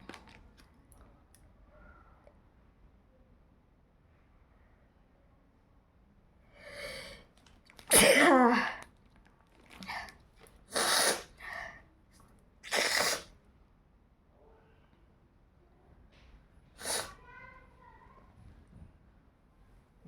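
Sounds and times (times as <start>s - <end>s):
soft breaths: 6.4s - 7.4s
person sneezing: 7.9s - 8.8s, 10.7s - 11.6s, 12.6s - 13.3s, 16.8s - 17.2s.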